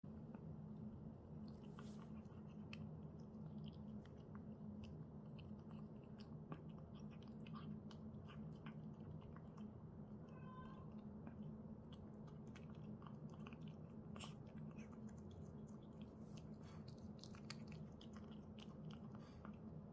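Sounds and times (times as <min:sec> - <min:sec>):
steady low hum: 0:00.0 - 0:19.9
cat crunching dry kibble: 0:11.1 - 0:19.6.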